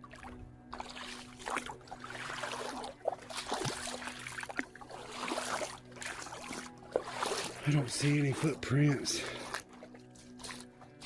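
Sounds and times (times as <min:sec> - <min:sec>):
footsteps splashing through water: 0:00.0 - 0:11.0
water trickling: 0:00.0 - 0:11.0.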